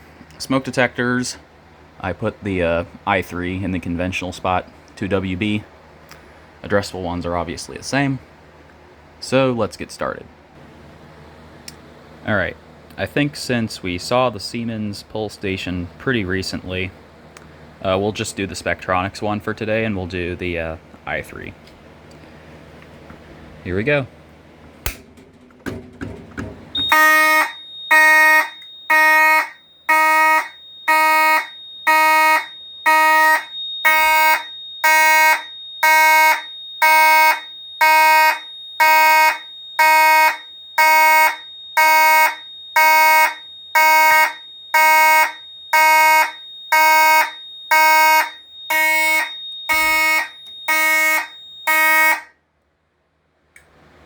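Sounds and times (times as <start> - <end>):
fire alarm horn: 26.7 - 52.4.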